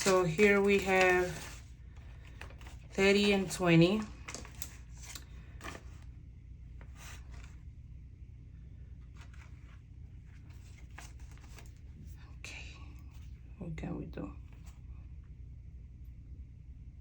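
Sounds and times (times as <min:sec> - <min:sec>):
paper banknotes rustling: 0:00.0 - 0:06.1, 0:06.8 - 0:07.6, 0:09.0 - 0:12.1.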